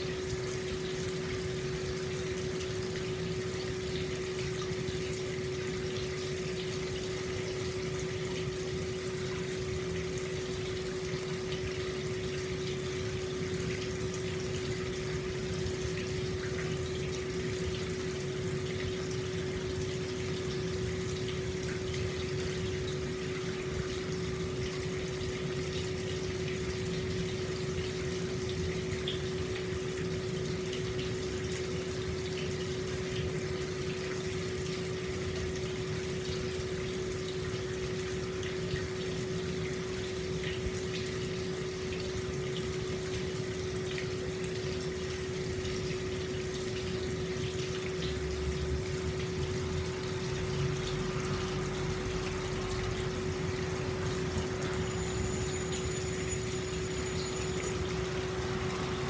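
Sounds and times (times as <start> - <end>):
water splashing into bath: 42.4 - 59.0
faint high whistle: 54.7 - 58.5.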